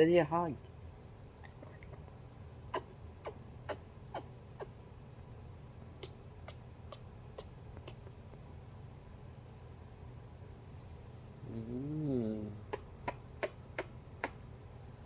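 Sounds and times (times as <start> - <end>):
cockatoo beak clicking: 1.4 - 4.8, 12.7 - 14.4.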